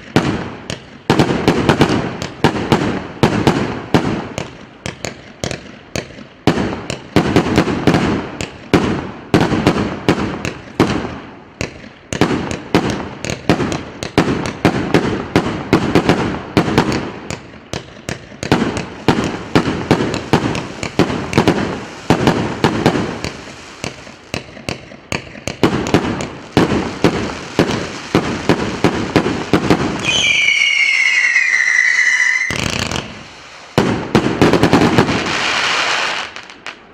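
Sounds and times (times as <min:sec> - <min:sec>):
firework cake shots and bursts: 0:00.0 - 0:36.8
shrill firework whistle: 0:30.0 - 0:33.0.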